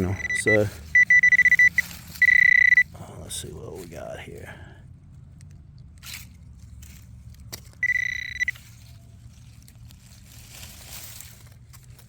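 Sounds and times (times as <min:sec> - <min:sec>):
digging in soil scrapes: 0:00.0 - 0:02.7, 0:06.0 - 0:07.9, 0:08.5 - 0:12.0
metal detector beep: 0:00.0 - 0:02.9, 0:07.8 - 0:08.6
low steady rumble: 0:00.0 - 0:12.0.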